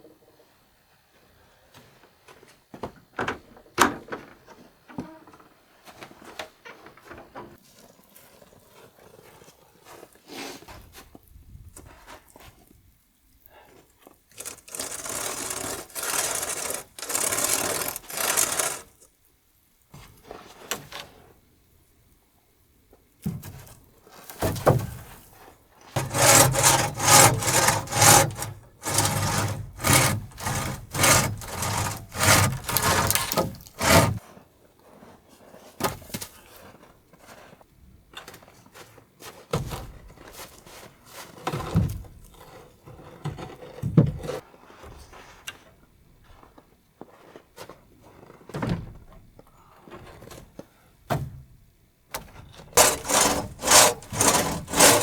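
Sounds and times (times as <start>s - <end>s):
knocks and scrapes of wood: 2.3s - 7.6s, 14.4s - 18.9s, 23.2s - 34.4s, 38.2s - 45.7s, 52.2s - 55.0s
wood being sawn by hand: 14.4s - 19.0s, 26.0s - 34.2s, 52.8s - 55.0s.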